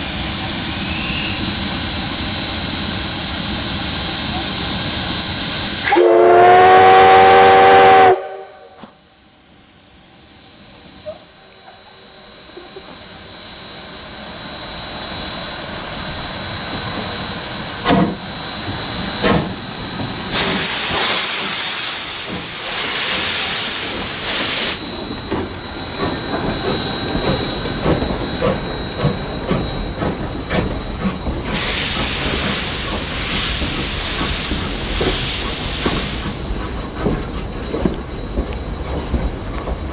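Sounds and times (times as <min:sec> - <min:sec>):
locomotive approaching: 0:00.0 - 0:39.9
steam hissing: 0:00.0 - 0:39.9
steam locomotive whistle: 0:00.5 - 0:01.8, 0:05.6 - 0:09.0.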